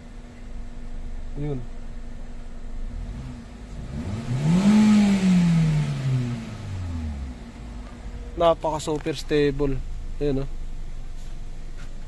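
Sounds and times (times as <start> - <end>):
car engine revving: 2.7 - 12.0.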